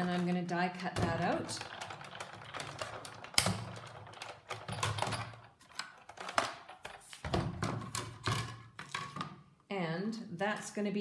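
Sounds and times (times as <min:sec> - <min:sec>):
hand-cranked die-cutting machine clacking: 0:01.1 - 0:05.3.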